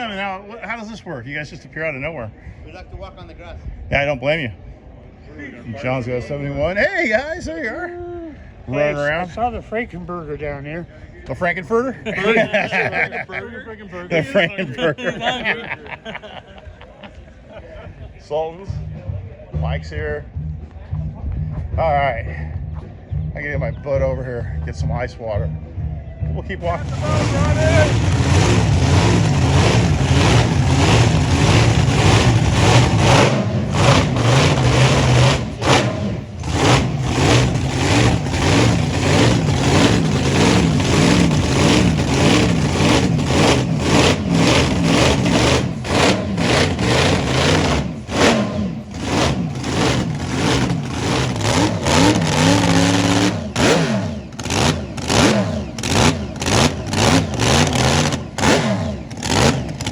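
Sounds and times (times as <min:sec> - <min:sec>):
car engine revving: 0:19.7 - 0:59.9.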